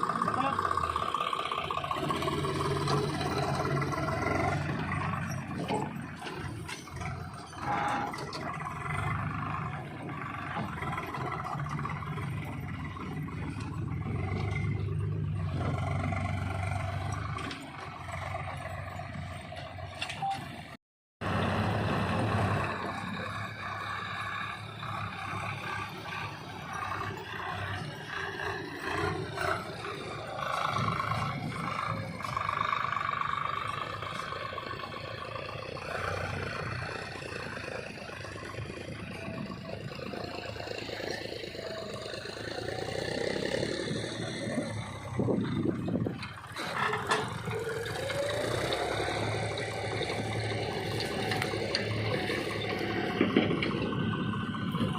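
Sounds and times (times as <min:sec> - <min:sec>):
diesel engine running: 0:00.0 - 0:54.9
machinery knocks and scrapes: 0:50.4 - 0:54.0.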